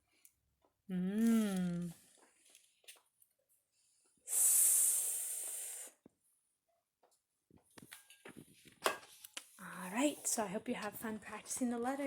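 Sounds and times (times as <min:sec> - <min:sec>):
person hissing: 0:04.3 - 0:06.0.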